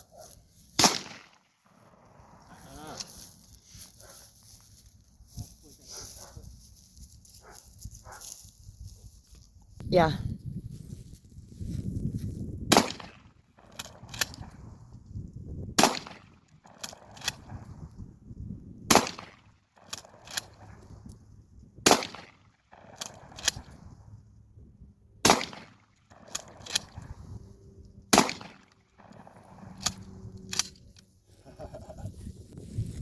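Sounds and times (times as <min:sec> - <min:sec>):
shotgun shots: 0:00.8 - 0:02.0, 0:12.7 - 0:14.4, 0:15.8 - 0:17.5, 0:18.9 - 0:20.6, 0:21.8 - 0:23.7, 0:25.2 - 0:27.0, 0:28.1 - 0:29.9.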